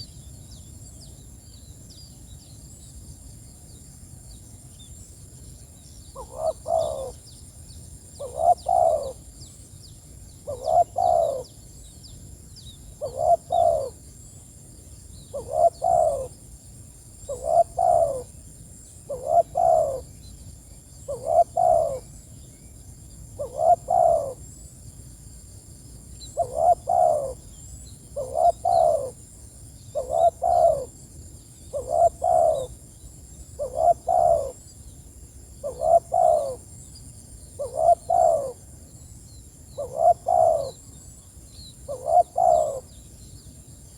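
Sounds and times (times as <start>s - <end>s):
small birds chirping: 0.0s - 16.4s, 26.2s - 43.9s
dove cooing: 6.2s - 7.2s, 8.2s - 9.2s, 10.4s - 11.5s, 13.0s - 14.0s, 15.3s - 16.3s, 17.2s - 18.3s, 19.1s - 20.1s, 21.1s - 22.1s, 23.4s - 24.4s, 26.3s - 27.5s, 28.2s - 29.2s, 29.9s - 31.0s, 31.7s - 32.8s, 33.6s - 34.6s, 35.6s - 36.7s, 37.6s - 38.6s, 39.7s - 40.8s, 41.8s - 42.9s.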